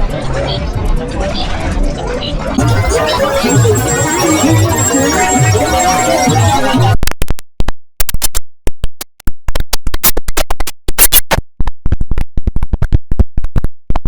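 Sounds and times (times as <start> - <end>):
stuttering glitched jingle fragments: 2.6 - 7.0.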